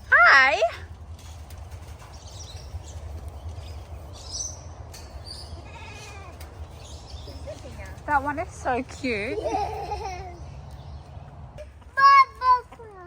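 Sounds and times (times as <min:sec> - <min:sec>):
bird chirps: 0:02.0 - 0:08.0
bleat: 0:05.6 - 0:06.4.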